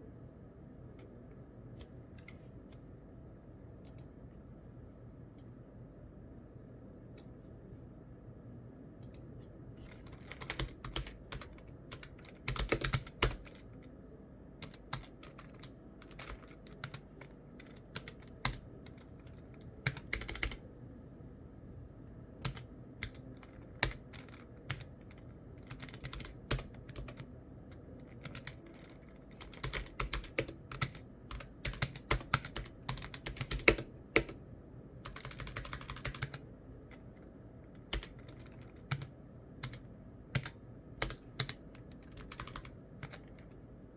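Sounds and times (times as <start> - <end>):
keyboard typing clicks: 3.8 - 4.1, 9.0 - 13.8, 14.6 - 20.6, 22.4 - 34.4, 35.0 - 43.6.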